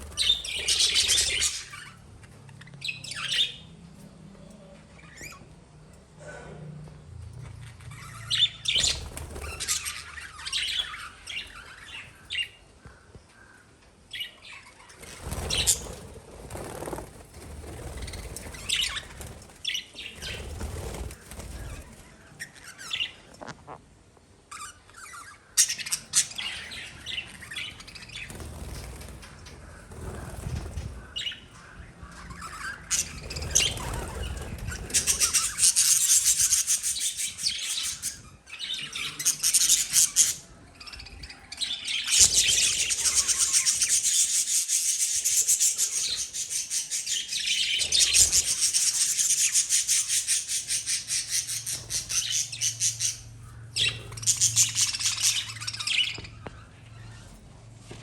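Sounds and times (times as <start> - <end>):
lovebirds chirping: 0.0 - 5.6, 7.6 - 23.8, 24.5 - 58.0
wings flapping: 8.7 - 11.7, 15.0 - 22.2, 27.2 - 37.4.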